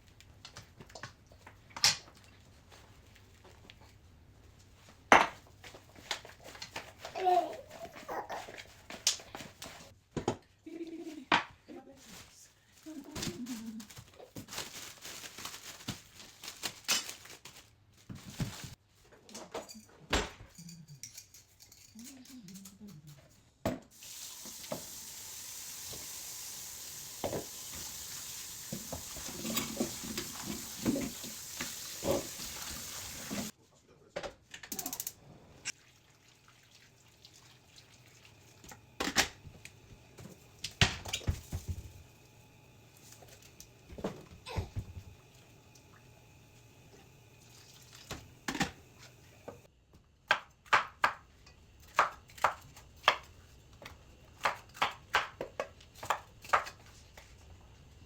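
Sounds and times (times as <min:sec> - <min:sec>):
kitchen tap running: 0:23.9 - 0:33.5, 0:43.4 - 0:49.7.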